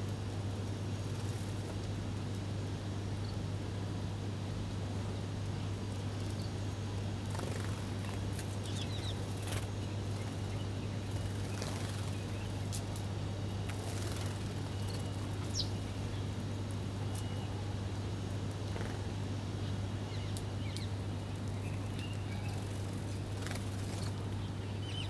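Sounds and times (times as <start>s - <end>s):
small birds chirping: 7.3s - 12.7s, 13.7s - 16.4s, 20.0s - 25.0s.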